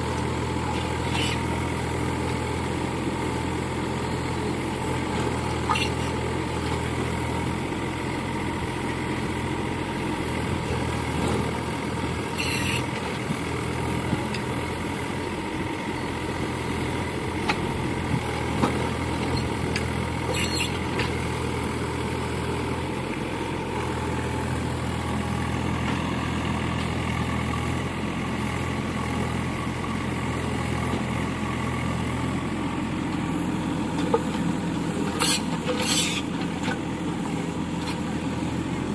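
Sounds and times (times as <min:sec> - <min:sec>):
diesel engine running: 0:00.0 - 0:38.9.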